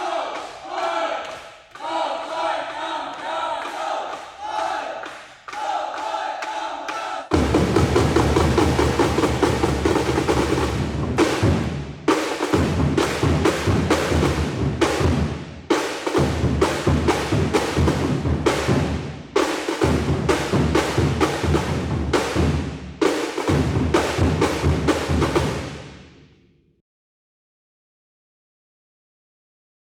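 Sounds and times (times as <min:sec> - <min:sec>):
snare drums: 0:00.0 - 0:26.3
bass drums: 0:07.3 - 0:15.6, 0:16.2 - 0:25.8.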